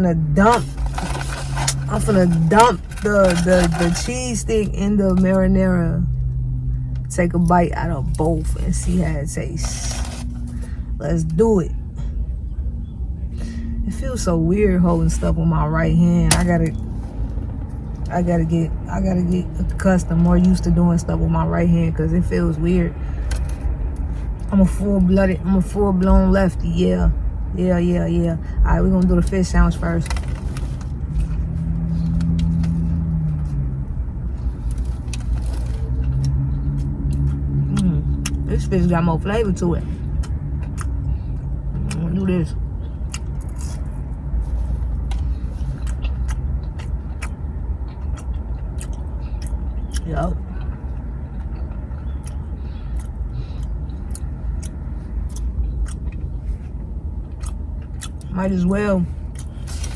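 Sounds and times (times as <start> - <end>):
low hum: 0.0 - 59.9
vehicle idling rumble: 0.0 - 59.9
faint chewing clicks: 40.1 - 42.0, 42.8 - 43.9, 45.0 - 58.3, 59.3 - 59.9.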